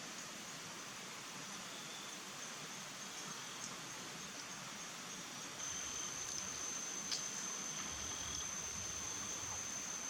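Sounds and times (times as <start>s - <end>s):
outdoor background hiss: 0.0s - 10.0s
faint high-pitched tone: 5.6s - 10.0s.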